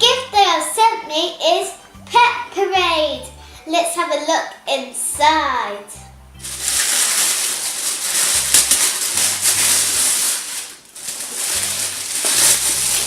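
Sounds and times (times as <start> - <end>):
packaging rustling and tearing: 6.4 - 13.0.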